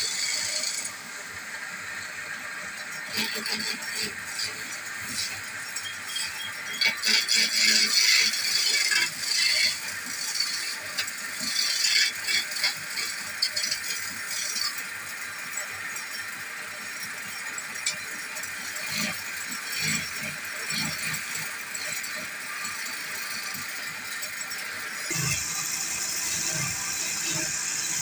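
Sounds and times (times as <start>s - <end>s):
wood lathe tool scraping: 0.0s - 28.0s.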